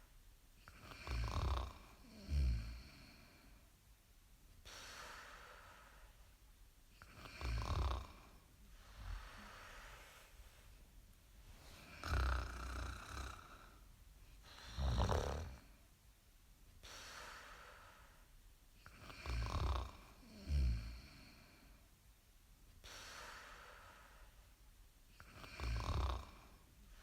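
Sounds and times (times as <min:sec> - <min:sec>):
person snoring: 0:00.7 - 0:03.4, 0:07.0 - 0:10.2, 0:11.8 - 0:13.8, 0:14.5 - 0:15.7, 0:18.9 - 0:21.6, 0:25.2 - 0:26.6.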